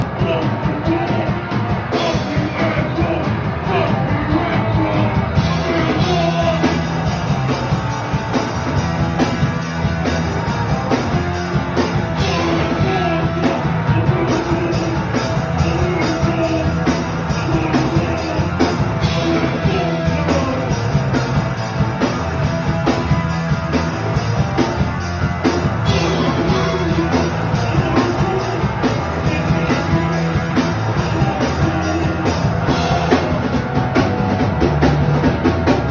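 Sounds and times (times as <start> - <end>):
person singing: 0.0 - 8.4, 10.6 - 21.4, 25.8 - 33.6
fast drums: 0.0 - 35.9
live rock band playing: 0.0 - 35.9.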